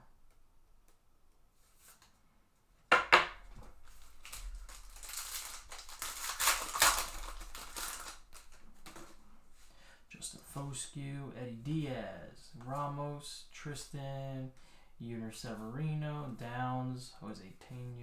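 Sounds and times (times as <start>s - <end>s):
wrapper crinkling: 3.5s - 9.3s
wrapper ripping: 3.7s - 9.2s.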